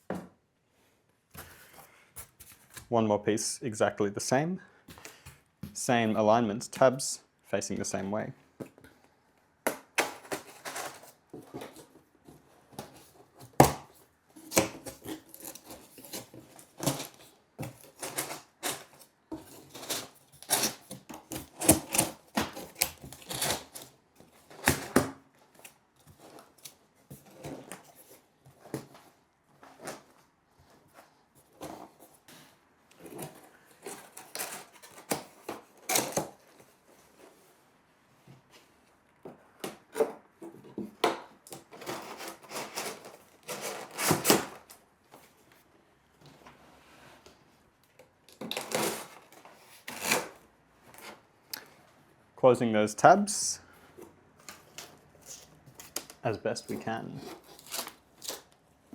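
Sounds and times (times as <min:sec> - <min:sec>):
cardboard parts clicking and knocking: 0:09.6 - 0:29.1, 0:39.2 - 0:44.8
cardboard scraping rustles: 0:10.1 - 0:13.5, 0:14.4 - 0:47.7, 0:48.4 - 0:51.3, 0:53.9 - 0:58.5.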